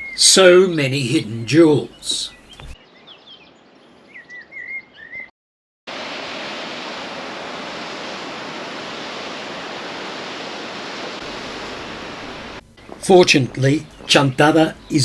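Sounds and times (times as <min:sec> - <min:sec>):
small bird chirping: 0:01.8 - 0:05.3, 0:11.3 - 0:15.0
steady rushing noise: 0:05.9 - 0:14.9.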